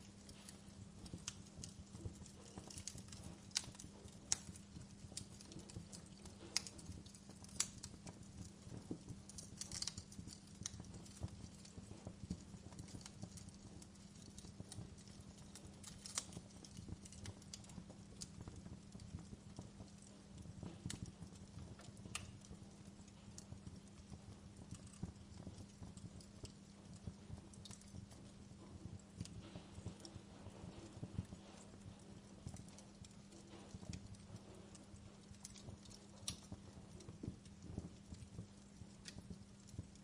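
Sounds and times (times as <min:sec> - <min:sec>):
steady low hum: 0:00.0 - 0:40.0
wood fire crackling: 0:00.0 - 0:40.0.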